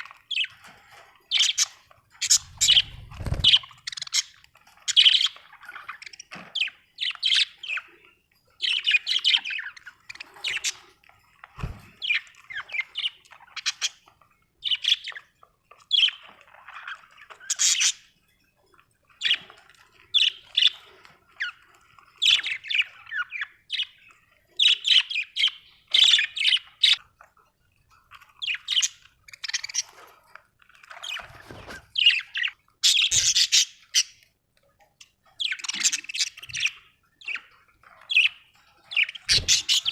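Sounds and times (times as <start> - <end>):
budgerigars chirping: 0.0 - 0.7, 1.3 - 8.0, 8.6 - 10.9, 11.6 - 18.1, 22.2 - 27.0, 28.2 - 29.9, 30.8 - 34.2, 35.4 - 39.9.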